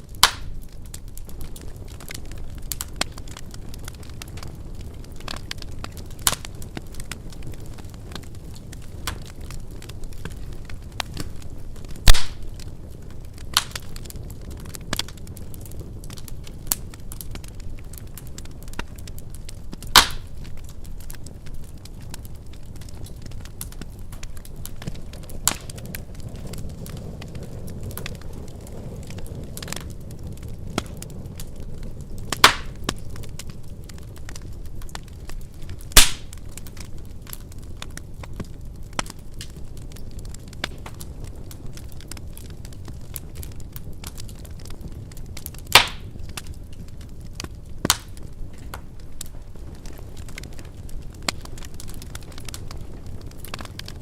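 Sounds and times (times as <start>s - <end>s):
fire crackling: 0.0s - 54.0s
fire flames rushing: 0.0s - 54.0s
loud sharp wood pops: 0.2s - 0.6s, 12.0s - 12.5s, 19.9s - 20.3s, 32.4s - 32.8s, 36.0s - 36.3s, 45.7s - 46.0s.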